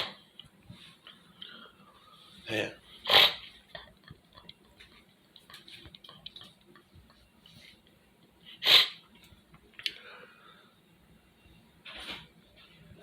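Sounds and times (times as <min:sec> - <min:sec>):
person sniffing: 0:03.0 - 0:03.5
person sneezing: 0:03.1 - 0:03.5.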